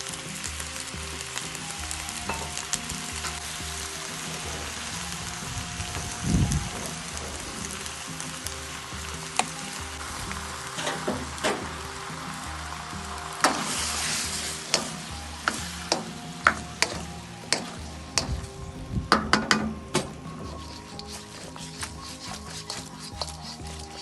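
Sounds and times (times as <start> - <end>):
food sizzling in a pan: 0.0 - 18.6, 19.2 - 24.0
soft background music: 0.0 - 24.0
spatula knocking and scraping pan: 19.2 - 24.0.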